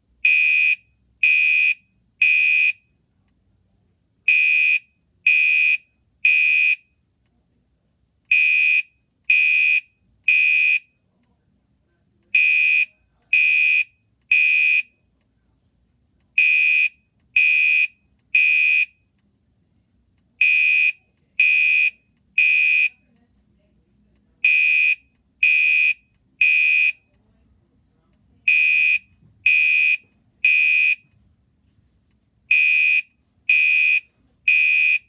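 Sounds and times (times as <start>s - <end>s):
fire alarm horn beeps: 0.2s - 2.9s, 4.3s - 7.0s, 8.3s - 11.0s, 12.4s - 15.0s, 16.4s - 19.0s, 20.4s - 23.0s, 24.4s - 27.1s, 28.5s - 31.2s, 32.5s - 35.0s.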